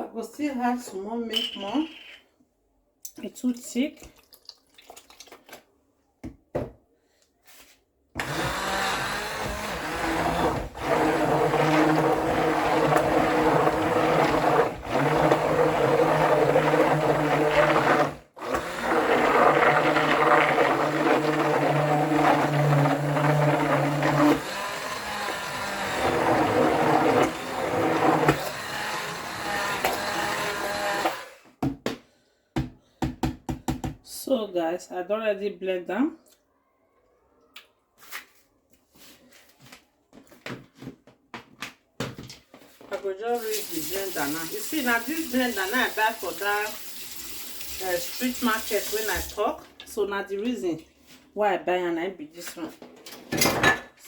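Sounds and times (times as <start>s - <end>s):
electric blender running: 8.2s - 31.5s.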